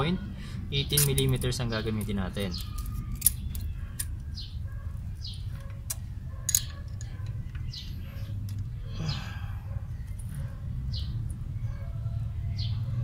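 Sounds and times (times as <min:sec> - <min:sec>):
hand tools clicking on metal: 0:00.8 - 0:04.2, 0:05.6 - 0:07.7.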